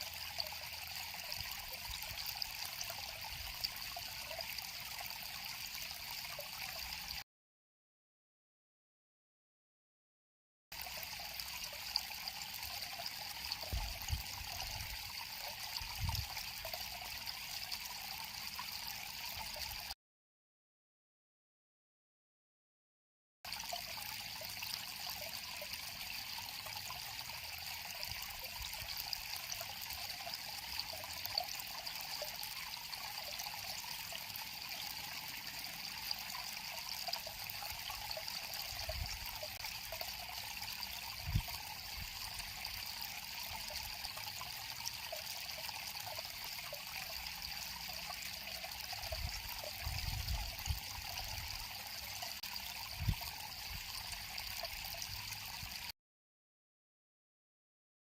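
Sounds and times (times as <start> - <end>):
river water flowing over stones: 0.0 - 7.2, 23.5 - 55.9.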